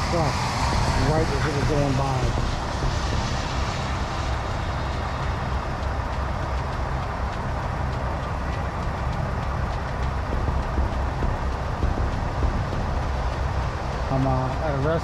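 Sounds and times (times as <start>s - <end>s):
even hiss: 0.0s - 6.1s
diesel engine idling: 0.0s - 15.0s
faint light ticking: 2.4s - 14.7s.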